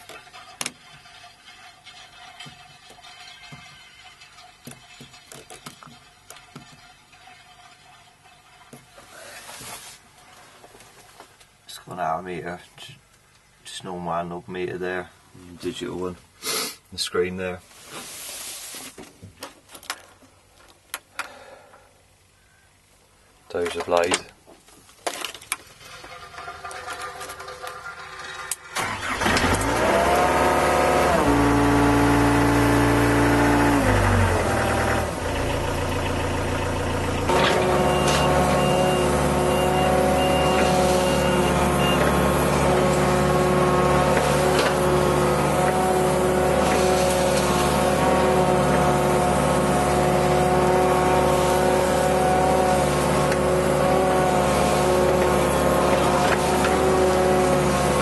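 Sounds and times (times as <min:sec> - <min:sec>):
excavator diesel engine running: 0:25.8 - 0:58.0.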